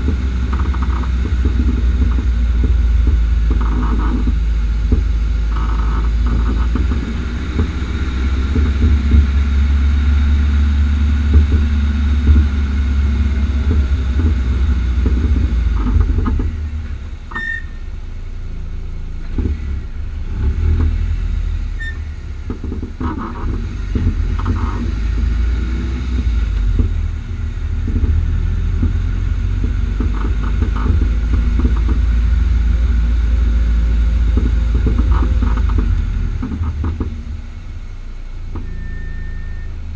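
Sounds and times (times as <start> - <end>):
suspension knocks and pops: 0.0 - 17.6, 19.2 - 19.9, 21.8 - 37.6
low road rumble: 0.0 - 39.9.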